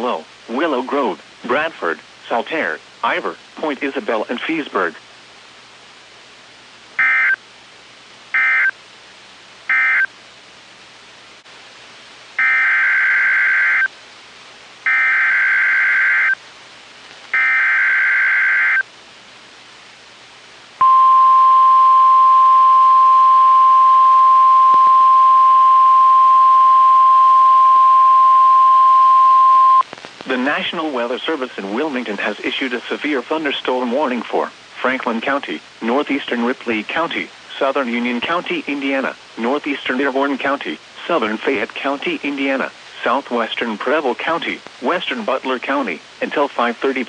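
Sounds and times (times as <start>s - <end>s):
steady warning alarm tone: 7.0s - 7.4s, 8.4s - 8.7s, 9.7s - 10.1s, 12.4s - 13.9s, 14.9s - 16.4s, 17.4s - 18.8s.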